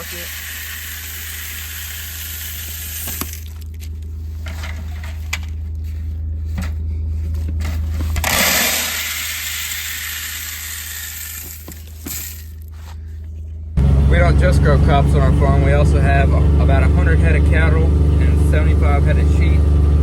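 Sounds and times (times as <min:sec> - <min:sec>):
feed pouring into bucket: 0:00.0 - 0:03.6
engine idling: 0:00.0 - 0:20.0
feed rattling in bucket: 0:07.6 - 0:12.7.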